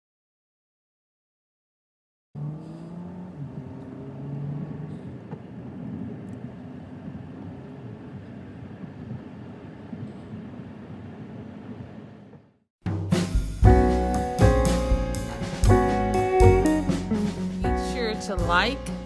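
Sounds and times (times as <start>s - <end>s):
car engine hum: 2.4s - 12.4s
road noise: 2.4s - 12.6s.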